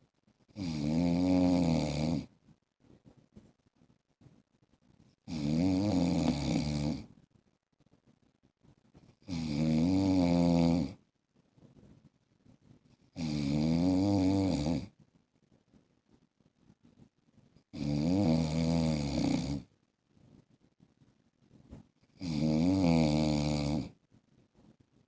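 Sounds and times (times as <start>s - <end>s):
man snoring: 0.6s - 2.3s, 5.3s - 7.1s, 9.3s - 11.0s, 13.2s - 14.9s, 17.8s - 19.7s, 22.2s - 24.0s.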